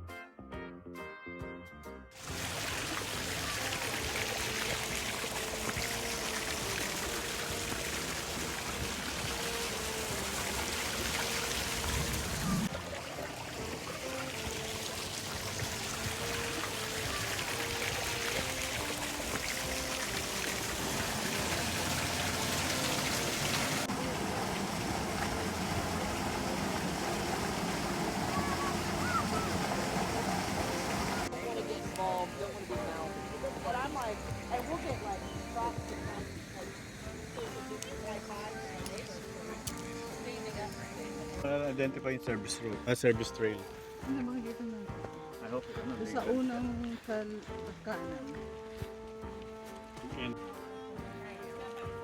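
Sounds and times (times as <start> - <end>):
water rushing over waterfall: 2.2 - 35.2.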